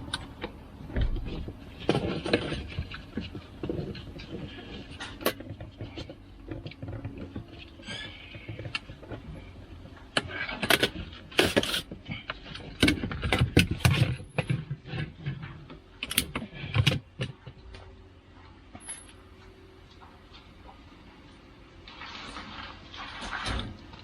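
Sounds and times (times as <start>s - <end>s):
buckles and latches clicking: 16.0s - 17.0s.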